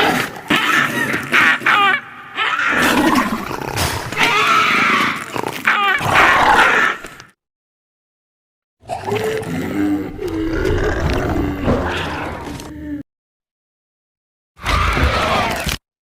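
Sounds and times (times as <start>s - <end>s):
creature roaring calls: 0.0s - 7.2s, 8.8s - 13.0s, 14.6s - 15.8s.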